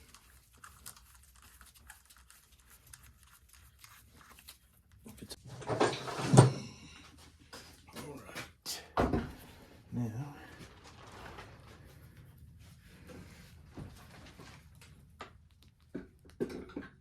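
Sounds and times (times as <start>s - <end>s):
metal rattle and scrape: 5.3s - 7.3s, 10.7s - 14.7s.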